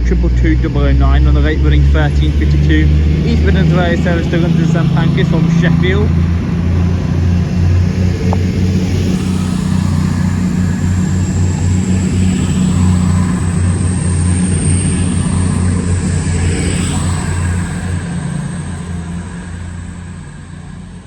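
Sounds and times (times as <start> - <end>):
thin high whine: 0.0 - 21.0
train diesel engines droning: 0.0 - 21.0.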